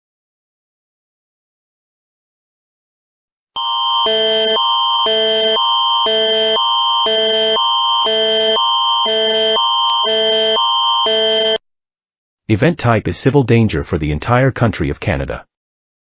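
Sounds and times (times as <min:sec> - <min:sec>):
steady high tone: 0:03.6 - 0:11.6
alternating electronic chords: 0:04.0 - 0:11.6.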